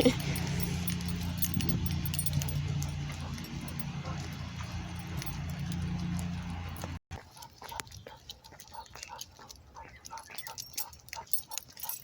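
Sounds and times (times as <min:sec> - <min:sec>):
dog collar tags jingling: 0:00.0 - 0:12.0.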